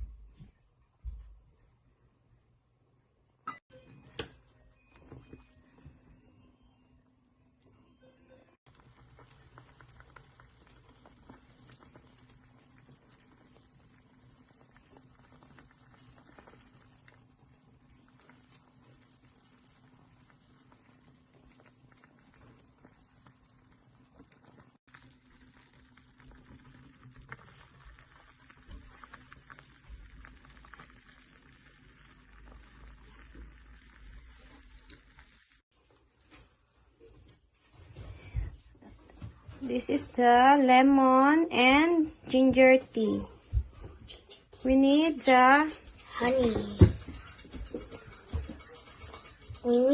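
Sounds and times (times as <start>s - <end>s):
water bubbling in a pot: 8.6s - 35.7s.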